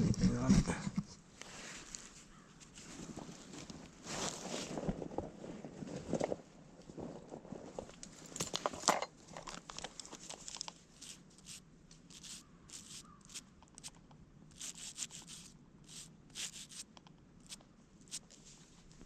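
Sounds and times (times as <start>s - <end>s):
faint scratching and rubbing: 10.1s - 14.0s, 14.6s - 16.9s, 17.5s - 19.0s.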